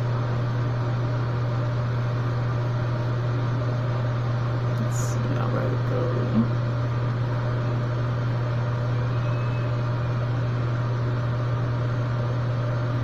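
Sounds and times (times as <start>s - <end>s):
faint brief tone: 9.0s - 10.2s.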